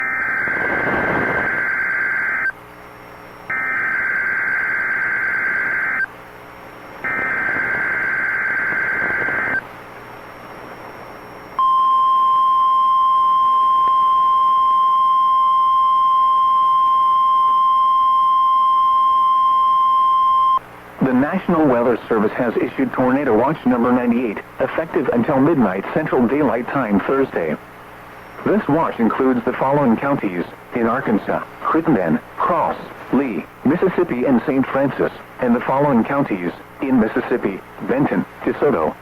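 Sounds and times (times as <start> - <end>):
screeching digital data tones: 3.5 - 6.1, 7.0 - 9.6.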